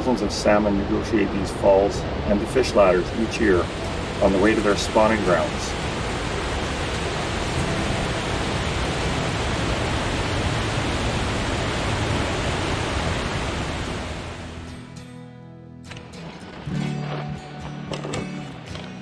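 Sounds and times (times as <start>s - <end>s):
waterfall roaring: 0.0s - 14.8s.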